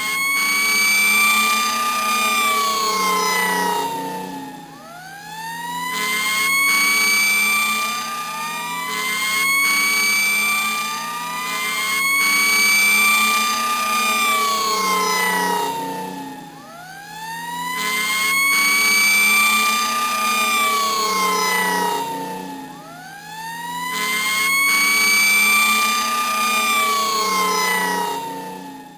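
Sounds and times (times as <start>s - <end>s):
police siren wailing: 0.0s - 28.9s
steady low drone: 2.2s - 5.0s, 13.8s - 16.8s.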